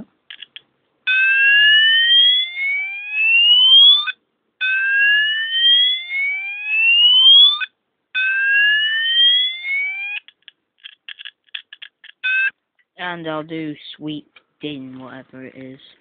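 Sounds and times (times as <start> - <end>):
fire alarm whoop tone: 1.1 - 10.2.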